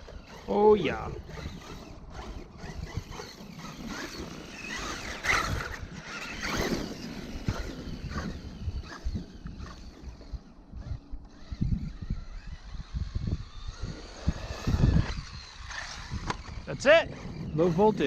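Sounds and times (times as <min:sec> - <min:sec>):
electric motor whining: 0:00.0 - 0:18.0
wind buffeting microphone: 0:00.0 - 0:18.0
tyres churning through wet sand: 0:13.4 - 0:18.0.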